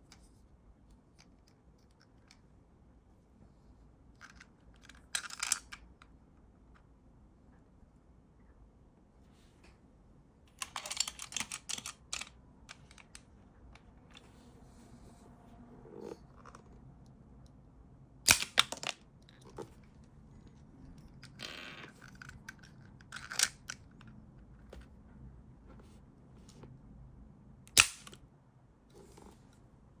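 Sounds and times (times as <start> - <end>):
plastic toy clicking: 10.6 - 13.2.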